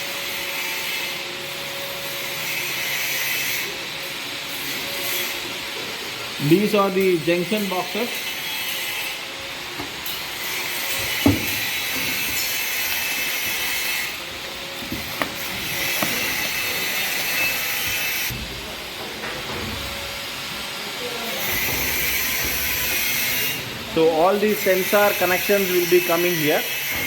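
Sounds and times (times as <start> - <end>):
light knocks: 11.2 - 12.4.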